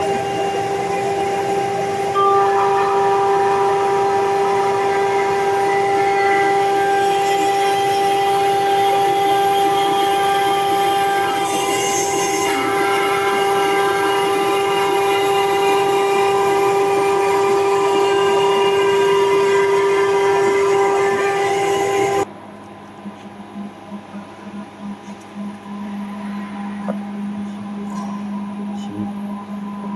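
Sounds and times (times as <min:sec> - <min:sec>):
router spindle whining: 0:00.0 - 0:22.3.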